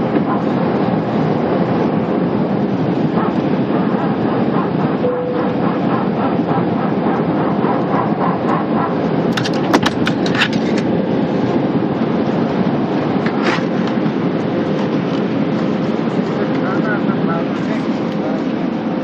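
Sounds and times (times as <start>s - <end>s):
jet engines roaring: 0.0s - 19.0s
wheels rumbling on runway: 0.0s - 19.0s
sharp clicks or rattles: 9.3s - 10.9s.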